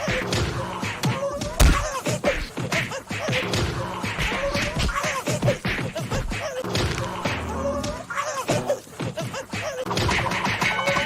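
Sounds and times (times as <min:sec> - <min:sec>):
cartoon thumps whacks and slaps: 0:01.6 - 0:02.6.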